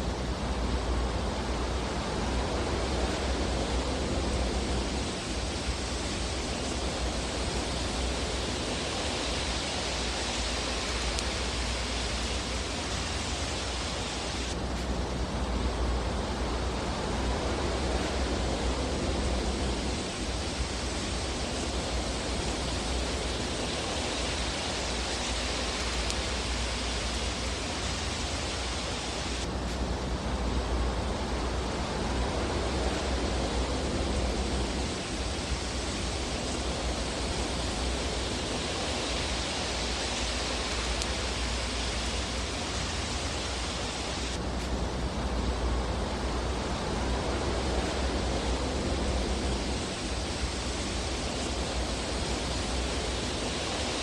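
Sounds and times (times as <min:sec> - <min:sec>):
fire crackles: 0:00.0 - 0:54.0
fireplace fire hissing: 0:00.0 - 0:54.0.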